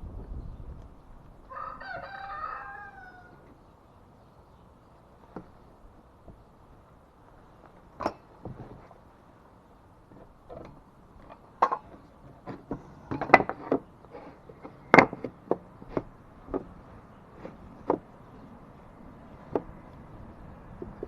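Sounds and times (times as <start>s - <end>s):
wooden boards knocking: 14.6s - 16.8s, 17.4s - 18.1s, 19.4s - 19.7s.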